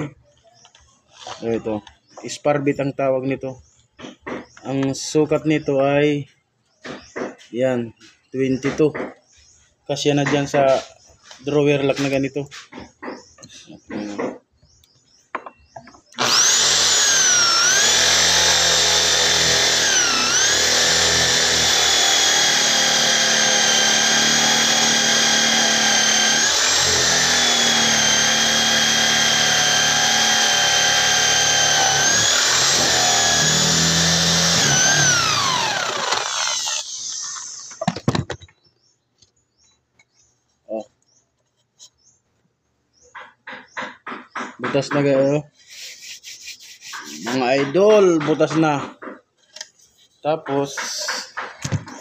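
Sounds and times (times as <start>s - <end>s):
electric drill boring wood: 16.2s - 38.0s, 50.7s - 51.4s.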